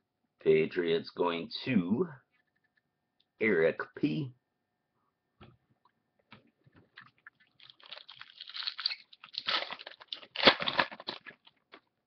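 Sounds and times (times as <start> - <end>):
foil wrapper crinkling and tearing: 7.3 - 11.9.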